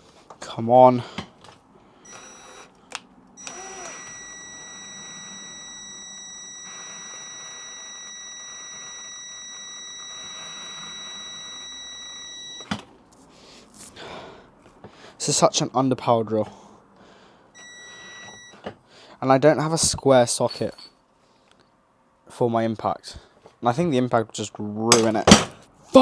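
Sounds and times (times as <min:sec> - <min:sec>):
drill stopping click: 0:02.1 - 0:02.7, 0:03.4 - 0:12.6
electric drill whining: 0:02.1 - 0:02.8, 0:03.4 - 0:12.7.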